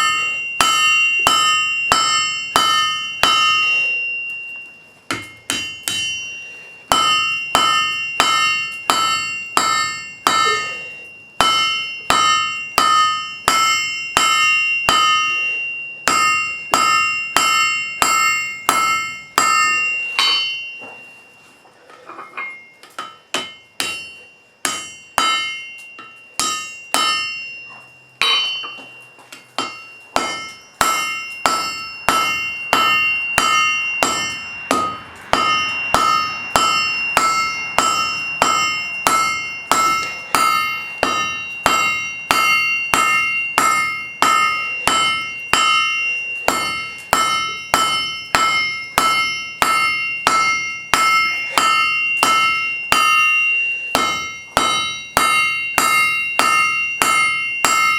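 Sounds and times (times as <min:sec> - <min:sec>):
hammer ringing on anvil: 0:00.0 - 0:57.9.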